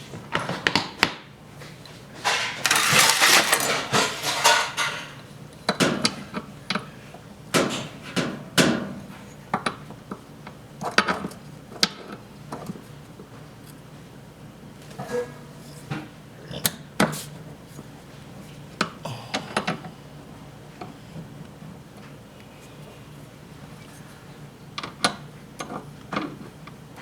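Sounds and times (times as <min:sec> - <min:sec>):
scraping inside washing machine: 0:02.1 - 0:05.2.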